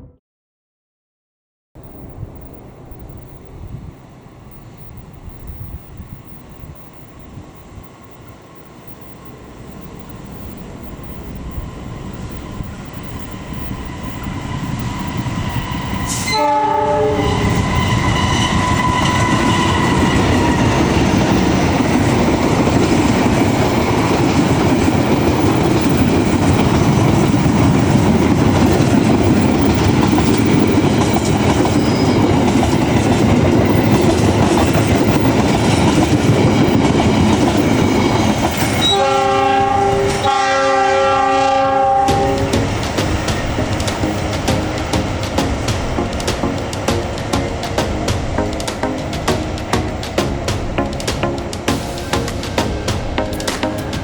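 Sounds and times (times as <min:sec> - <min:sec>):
train wheels rumbling on rails: 0:01.8 - 0:54.0
train horn: 0:14.0 - 0:21.6, 0:38.6 - 0:42.8.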